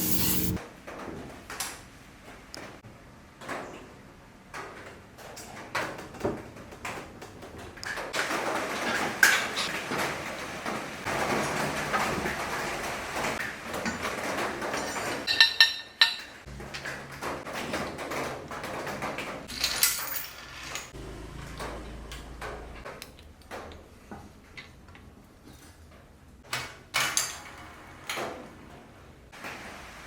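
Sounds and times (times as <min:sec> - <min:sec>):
rough scraping: 0:00.0 - 0:00.6
sharp metallic clinks and knocks: 0:00.0 - 0:00.6.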